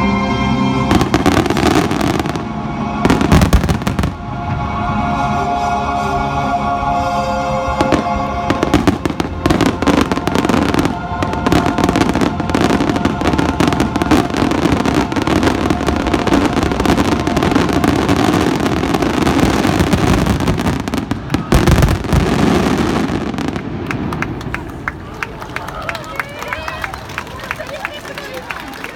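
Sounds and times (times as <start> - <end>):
fireworks bangs and crackles: 0.9 - 4.9, 7.8 - 25.0.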